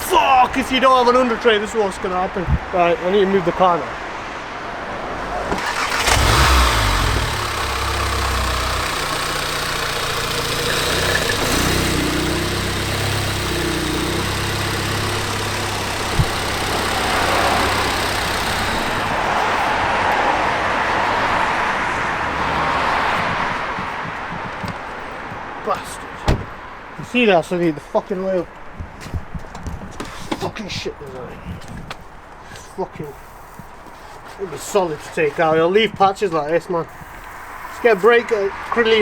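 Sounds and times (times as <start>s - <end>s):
car engine running: 5.2s - 21.4s.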